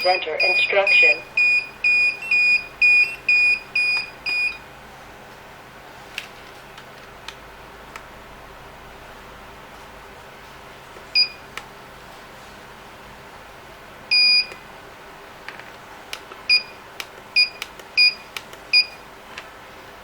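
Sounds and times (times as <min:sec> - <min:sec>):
keypad beeps: 0:00.0 - 0:04.6, 0:11.2 - 0:11.4, 0:14.1 - 0:14.6, 0:16.5 - 0:16.8, 0:17.4 - 0:19.0.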